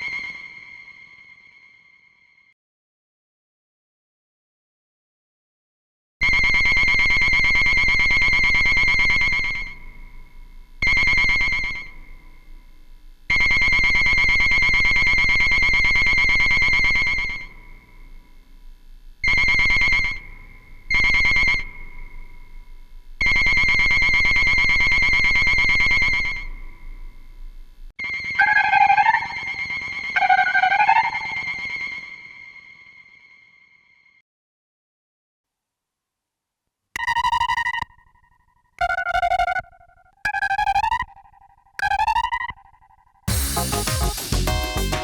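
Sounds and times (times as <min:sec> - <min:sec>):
trilled electronic synthesizer cry: 0:43.3 - 0:45.0.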